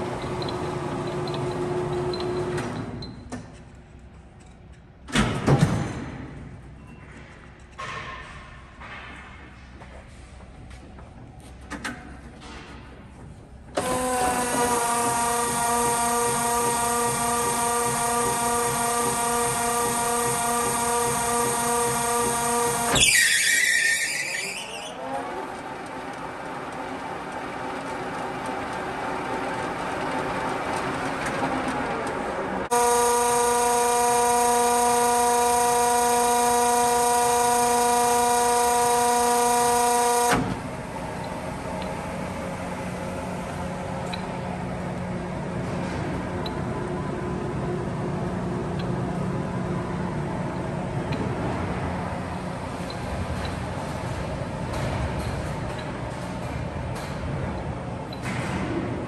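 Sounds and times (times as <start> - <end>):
rough lathe running noise: 13.8 - 23.0, 32.7 - 40.4
lathe headstock whine: 32.7 - 40.4.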